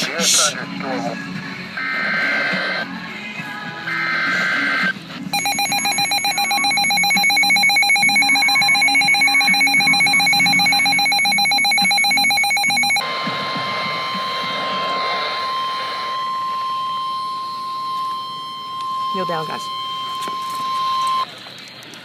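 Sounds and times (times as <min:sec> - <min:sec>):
steady warning tone: 0:03.8 - 0:21.3
pulsing electronic alert tone: 0:03.9 - 0:21.2.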